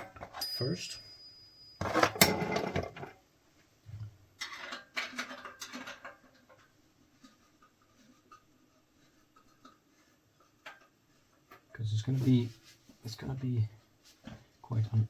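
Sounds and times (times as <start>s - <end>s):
metallic clattering of tools: 0.0s - 3.2s, 4.4s - 6.7s.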